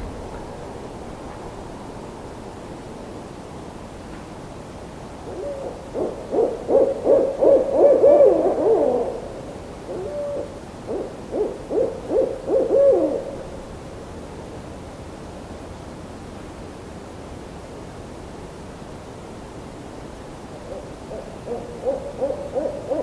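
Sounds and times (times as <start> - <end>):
steady background hiss: 0.0 - 23.0
owl hooting: 5.3 - 9.2, 9.9 - 13.5, 20.6 - 23.0.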